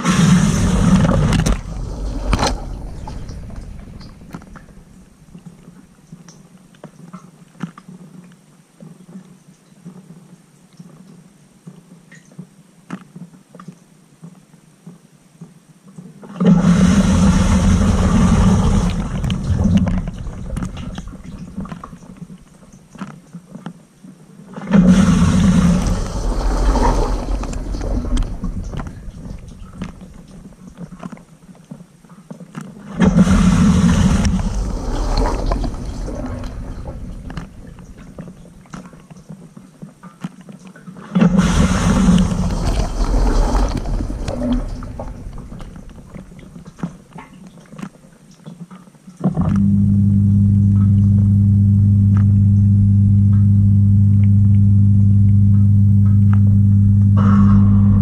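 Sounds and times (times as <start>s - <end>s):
pump hum: 0.0s - 6.0s, 16.4s - 22.8s, 24.6s - 31.4s, 32.8s - 39.1s, 41.1s - 47.2s, 49.3s - 58.0s
water splashing in dishwasher: 32.9s - 39.0s, 41.3s - 47.6s.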